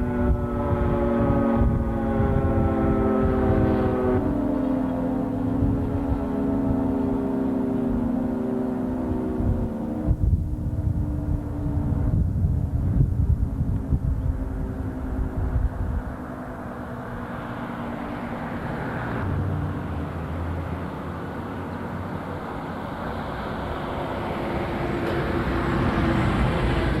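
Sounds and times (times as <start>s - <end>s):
vehicles passing: 0.0s - 27.0s
low rumble: 8.9s - 27.0s.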